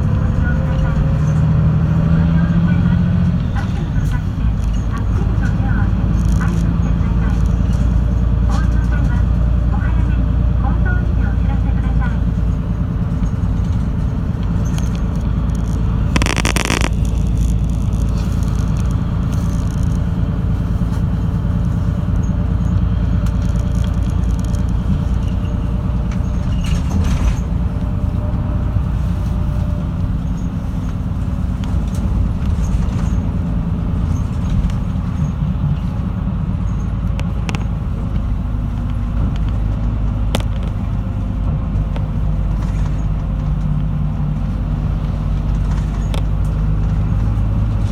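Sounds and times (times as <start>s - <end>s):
bus engine running: 0.0s - 47.9s
road and tyre noise: 0.0s - 47.9s
light clicks and rattles: 12.0s - 28.2s.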